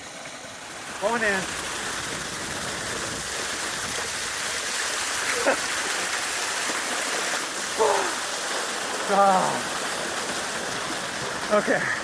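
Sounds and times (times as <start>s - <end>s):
creek water running: 0.0s - 12.0s
person exclaiming: 7.7s - 8.3s, 9.0s - 9.7s.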